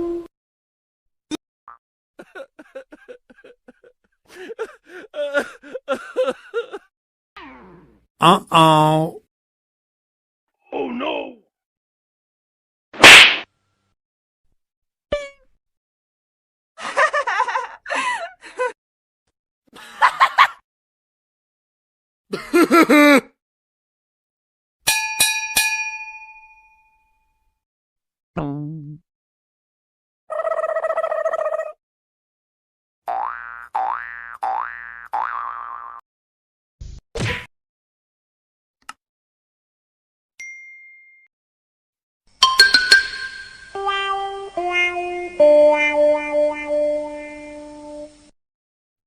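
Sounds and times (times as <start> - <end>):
bell struck: 24.9 - 26.9, 42.4 - 43.8
cartoonish wobbling voice sound: 30.3 - 31.8
high-pitched giggling laughter: 30.3 - 31.8.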